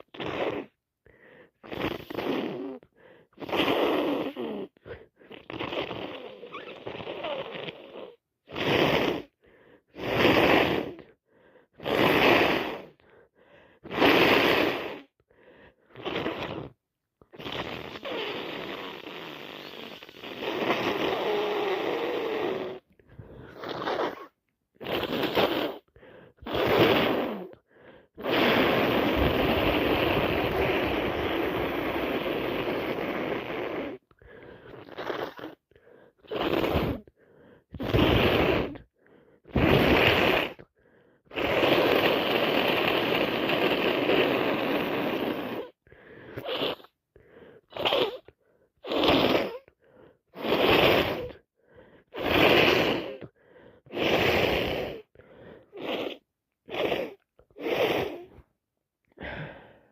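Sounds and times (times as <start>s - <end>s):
person breathing and sniffing: 0.0s - 59.9s.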